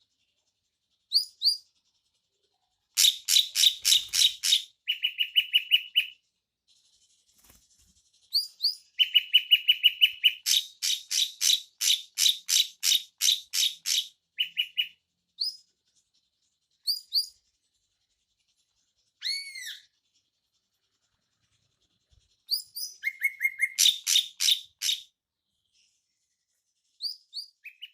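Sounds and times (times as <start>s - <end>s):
bird calling with sharp chirps: 3.0s - 6.2s, 8.3s - 15.6s, 19.2s - 19.9s, 22.4s - 25.2s, 27.0s - 27.9s.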